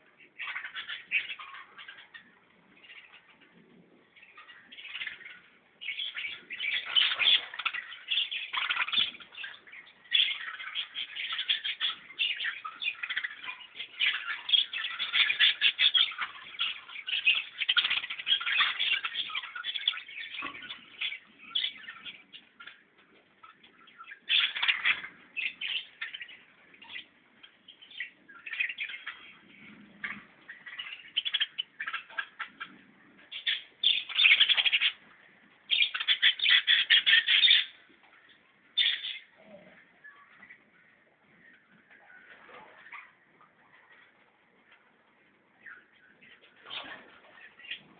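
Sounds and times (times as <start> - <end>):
small birds chirping: 0.0 - 47.9.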